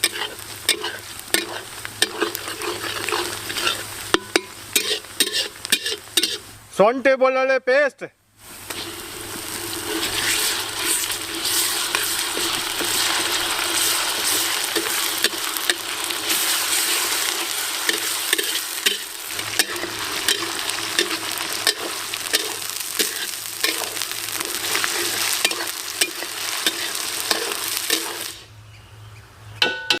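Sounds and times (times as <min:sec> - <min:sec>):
utensil tapping and scraping pan: 0:00.0 - 0:06.4, 0:09.9 - 0:15.9, 0:17.8 - 0:28.2
food sizzling in hot oil: 0:00.0 - 0:06.7, 0:08.4 - 0:28.5.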